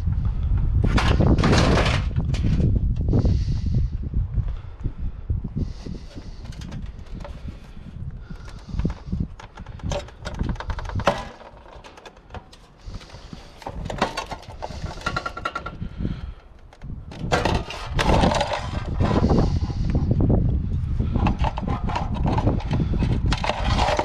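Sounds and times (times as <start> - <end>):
plastic and metal parts rattling: 0.8 - 2.8, 5.7 - 19.9, 21.0 - 24.0.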